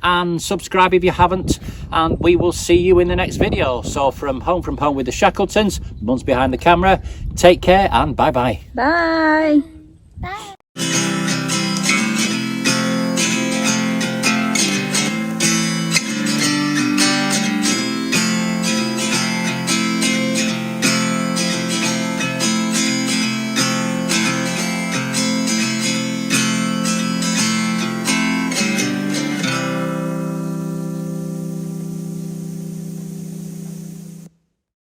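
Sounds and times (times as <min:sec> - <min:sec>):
strummed acoustic guitar: 0:10.4 - 0:32.5.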